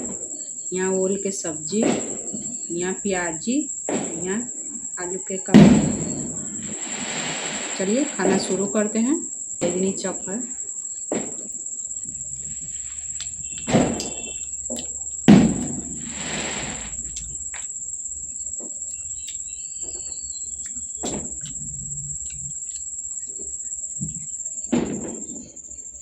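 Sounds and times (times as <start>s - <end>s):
cricket trill: 0.0s - 26.0s
chewing crunchy fried food: 11.4s - 15.2s, 18.8s - 24.4s
sudden crunches or knocks: 12.3s - 17.7s.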